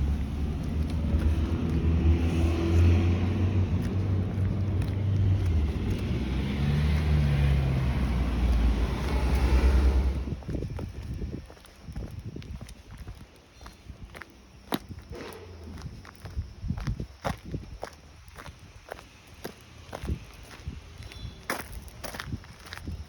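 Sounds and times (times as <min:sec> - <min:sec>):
traffic engine hum: 0:00.0 - 0:11.4.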